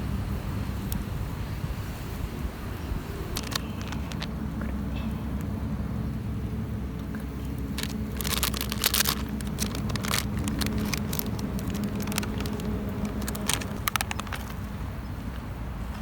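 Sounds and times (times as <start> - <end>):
wood fire crackling: 7.6 - 14.8.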